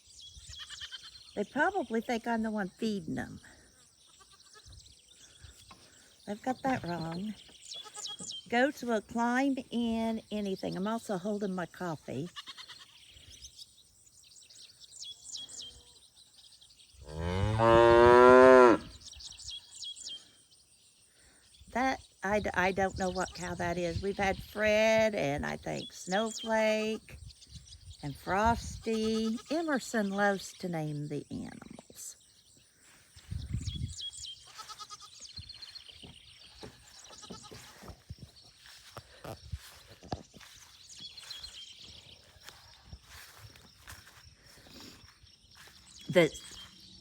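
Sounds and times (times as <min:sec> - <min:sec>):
birds singing: 0:00.0 - 0:47.0
cow mooing: 0:17.1 - 0:19.0
goats bleating: 0:34.5 - 0:35.2, 0:36.5 - 0:37.8.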